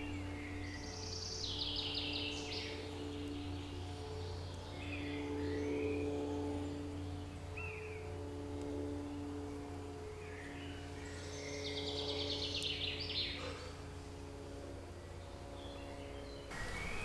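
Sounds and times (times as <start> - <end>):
steady low hum: 5.8 - 17.0
birds chirping and trilling: 16.5 - 17.0.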